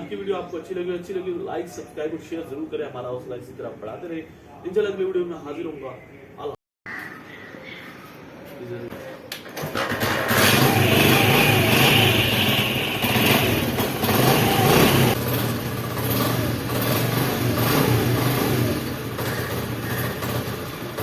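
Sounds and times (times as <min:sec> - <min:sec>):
motorcycle engine revving and idling: 0:09.8 - 0:21.0.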